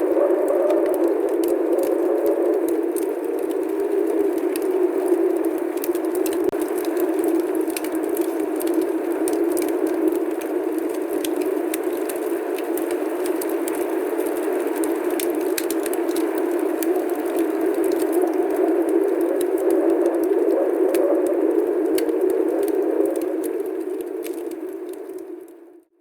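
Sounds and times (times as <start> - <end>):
snowstorm rushing noise: 0.0 - 5.7
small ticks and crackles: 0.0 - 25.9.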